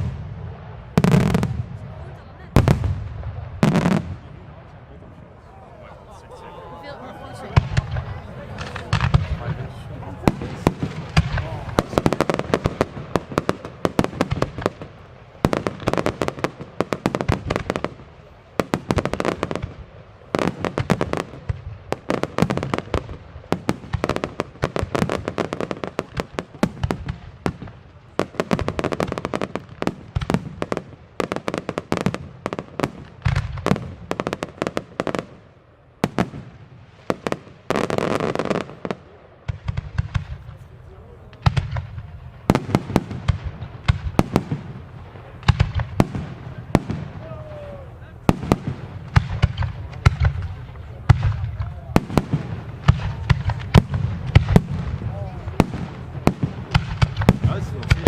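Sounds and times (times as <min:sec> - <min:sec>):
fireworks sharp bangs: 0:00.0 - 0:05.4, 0:06.0 - 0:58.0
deep firework boom: 0:07.5 - 0:16.4.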